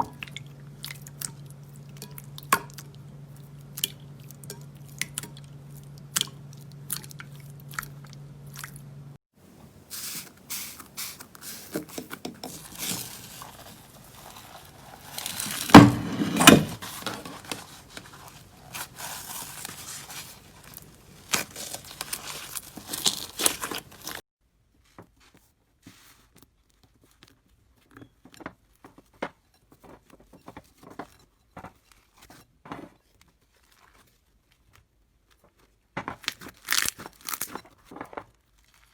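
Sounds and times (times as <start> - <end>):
slime squishing and popping: 17.0 - 24.2.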